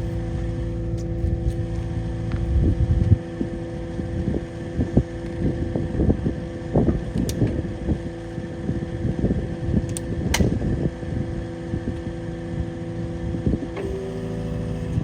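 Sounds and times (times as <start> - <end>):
wind buffeting microphone: 0.0 - 12.2
skid steer engine running: 0.0 - 15.0.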